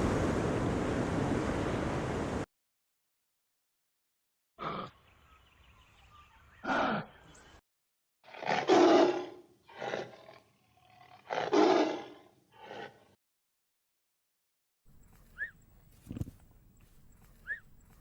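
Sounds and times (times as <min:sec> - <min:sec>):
animal roars: 0:08.3 - 0:13.2.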